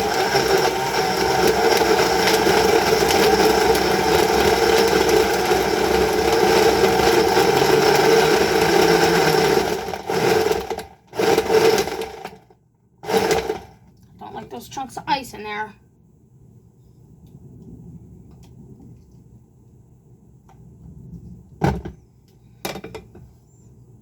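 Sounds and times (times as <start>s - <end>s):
blender grinding fruit and ice: 0.0s - 13.8s.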